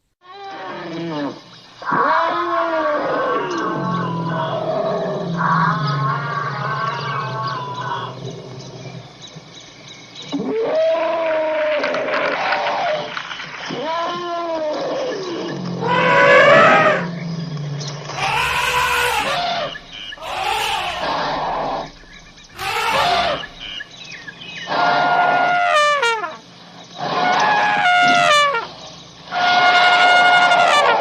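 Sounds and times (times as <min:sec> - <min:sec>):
elephants trumpeting: 0:15.8 - 0:17.0, 0:18.2 - 0:23.8.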